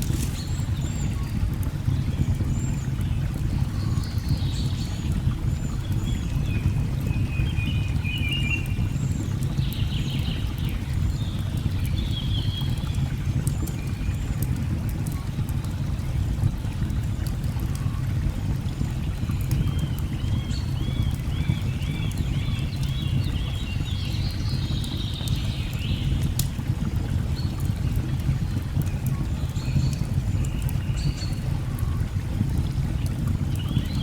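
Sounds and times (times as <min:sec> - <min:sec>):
birds chirping and warbling: 0:00.0 - 0:01.4
wood fire crackling: 0:00.0 - 0:02.1, 0:22.0 - 0:34.0.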